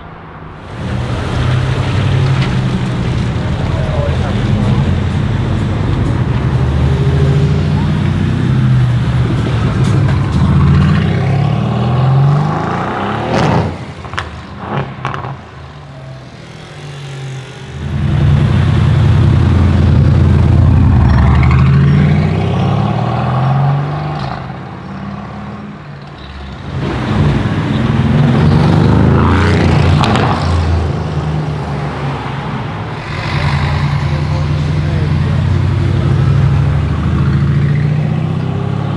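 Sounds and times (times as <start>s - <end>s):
exhaust crackles: 0.0s - 15.8s, 17.8s - 22.0s, 31.4s - 38.9s
car engine revving: 0.0s - 24.5s, 26.6s - 38.9s.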